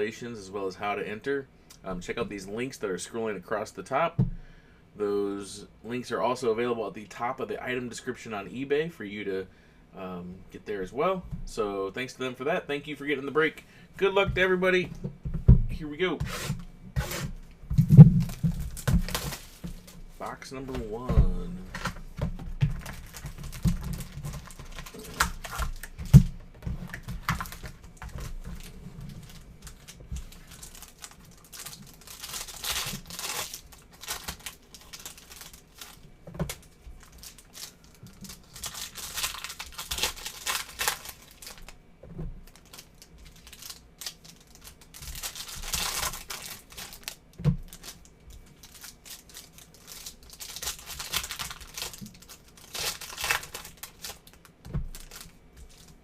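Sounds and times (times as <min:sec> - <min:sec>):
plastic wrap crinkling and tearing: 0:17.0 - 0:20.1, 0:21.6 - 0:41.8, 0:42.4 - 0:56.0.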